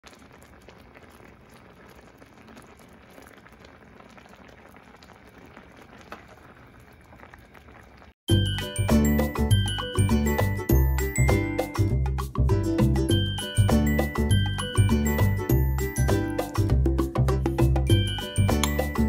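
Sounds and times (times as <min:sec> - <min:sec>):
food bubbling and hissing in pan: 0:00.0 - 0:08.2.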